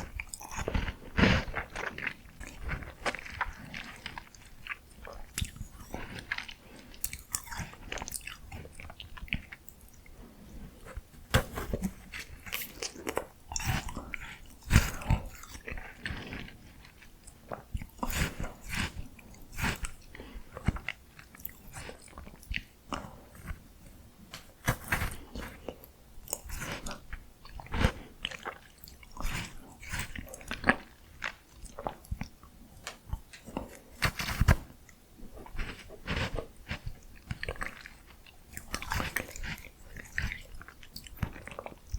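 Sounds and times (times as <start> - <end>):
crisp bites and chewing: 35.4 - 41.9.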